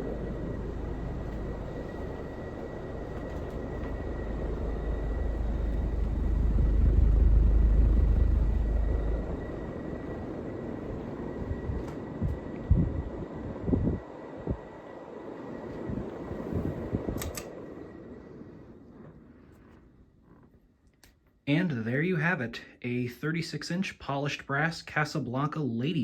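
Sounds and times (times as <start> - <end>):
low rumble: 0.0 - 14.6
ceiling fan air rush: 0.0 - 26.0.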